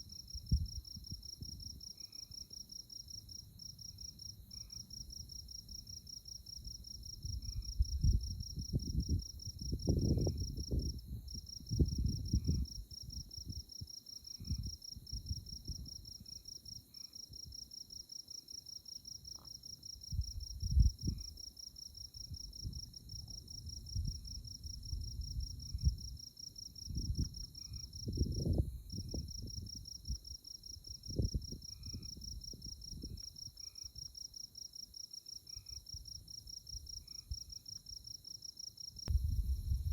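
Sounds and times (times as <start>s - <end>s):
night insects trilling: 0.1s - 39.9s
low rumbles: 39.1s - 39.9s.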